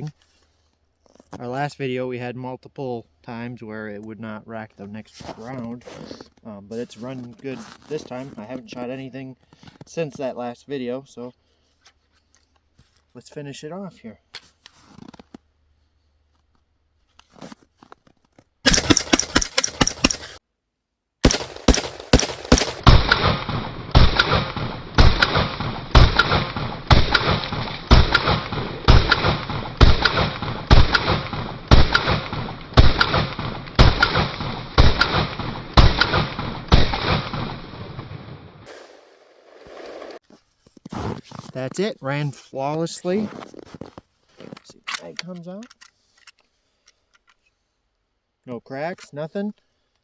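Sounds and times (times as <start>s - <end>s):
rifle shots: 18.7s - 20.4s, 21.2s - 38.7s.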